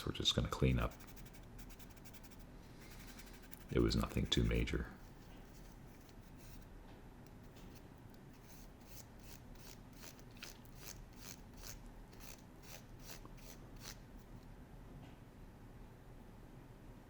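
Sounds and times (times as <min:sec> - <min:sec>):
rasping strokes on wooden gear: 0:00.9 - 0:04.6, 0:08.4 - 0:14.0.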